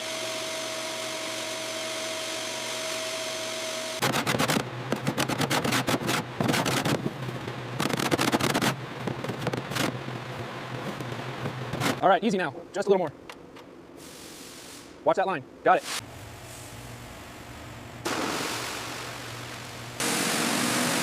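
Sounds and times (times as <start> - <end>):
constant whine: 0.0 - 14.0, 15.1 - 21.0
machine hiss: 14.0 - 15.0, 15.8 - 21.0
low steady hum: 15.2 - 20.0.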